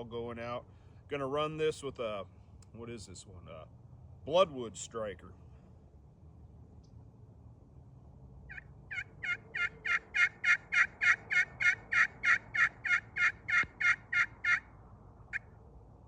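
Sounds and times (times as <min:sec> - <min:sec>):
turkey pot call yelps: 0:08.5 - 0:15.6.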